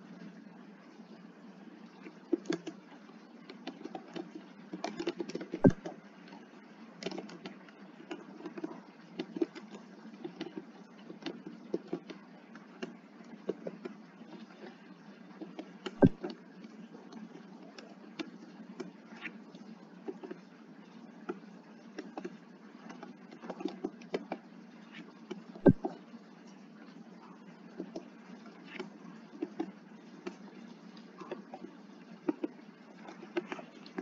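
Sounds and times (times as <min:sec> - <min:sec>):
keyboard typing: 0:03.6 - 0:05.9, 0:07.0 - 0:12.2.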